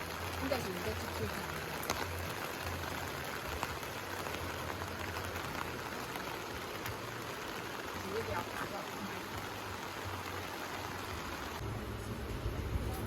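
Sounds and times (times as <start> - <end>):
raindrop ticks: 0.0 - 10.6
light rain hissing: 0.0 - 13.0.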